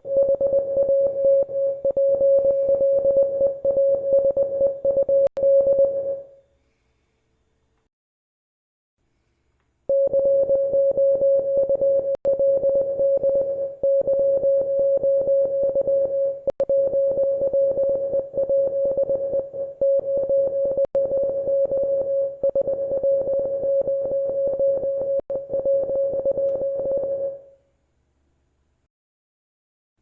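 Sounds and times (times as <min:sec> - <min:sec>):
morse code beeps: 0:00.0 - 0:05.9, 0:09.9 - 0:27.4.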